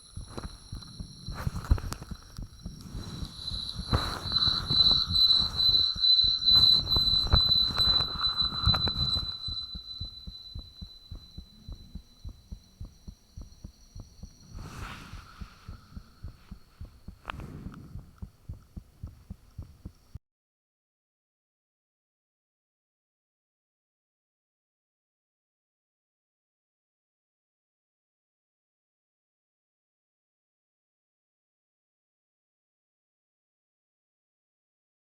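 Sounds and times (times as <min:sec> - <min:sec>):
high-pitched whine: 0:00.0 - 0:18.8
heartbeat thumps: 0:00.0 - 0:20.2
rushing swell: 0:00.5 - 0:11.6.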